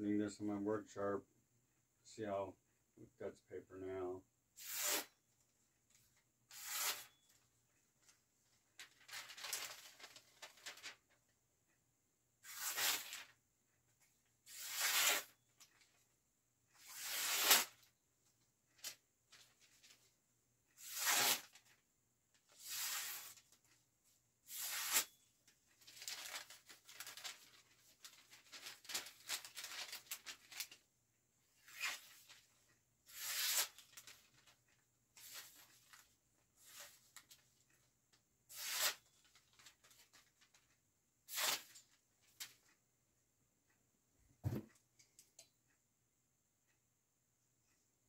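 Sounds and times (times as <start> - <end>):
sword slicing paper: 4.6 - 5.1, 6.5 - 7.1, 12.4 - 13.3, 14.5 - 15.3, 16.8 - 17.8, 20.8 - 21.6, 22.6 - 23.4, 24.5 - 25.2, 33.1 - 34.0, 38.5 - 39.1, 41.3 - 41.8.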